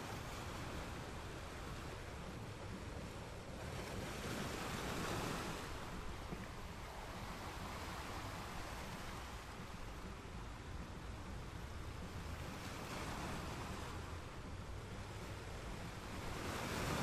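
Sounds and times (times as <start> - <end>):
ocean waves crashing: 0.0 - 17.0
surf washing: 0.0 - 17.0.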